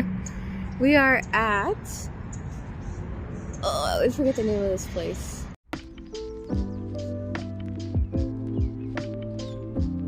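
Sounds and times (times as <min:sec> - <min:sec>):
background music with beat: 0:05.7 - 0:10.0.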